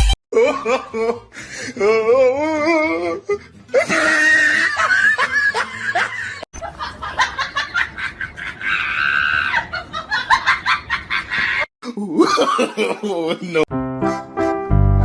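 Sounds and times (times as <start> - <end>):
people laughing: 3.7 - 13.7.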